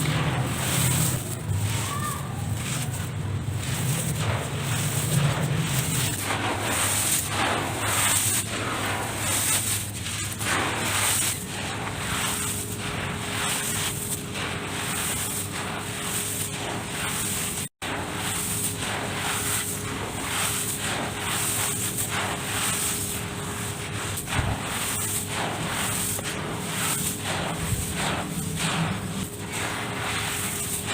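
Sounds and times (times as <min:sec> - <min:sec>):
hands rustling crumbly dirt: 0:00.0 - 0:06.2.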